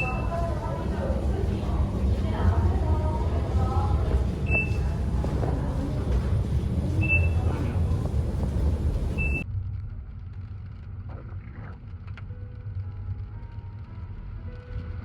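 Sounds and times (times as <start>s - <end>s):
short high beeps: 0.0s - 0.6s, 4.3s - 5.4s, 7.0s - 7.8s
low vehicle rumble: 0.0s - 15.0s.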